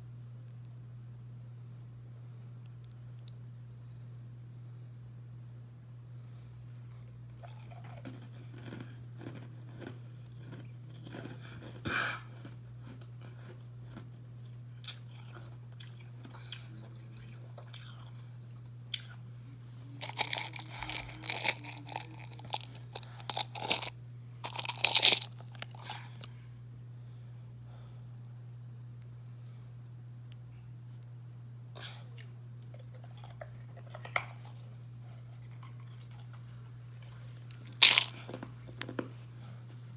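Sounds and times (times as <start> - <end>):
steady low hum: 0.0 - 39.9
ice chewing and crunching: 7.4 - 19.2, 19.8 - 26.8, 37.0 - 39.9.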